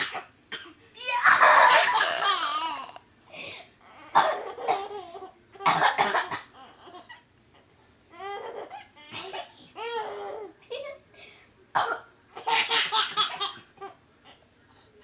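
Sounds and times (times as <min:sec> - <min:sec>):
baby giggling: 0:01.2 - 0:03.0
person coughing: 0:05.7 - 0:06.5.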